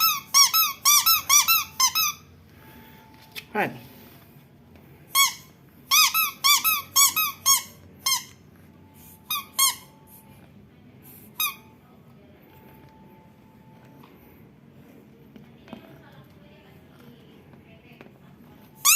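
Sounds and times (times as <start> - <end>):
squeaky toy squeaking: 0.0 - 2.3, 5.1 - 8.4, 9.2 - 10.0, 11.4 - 11.8.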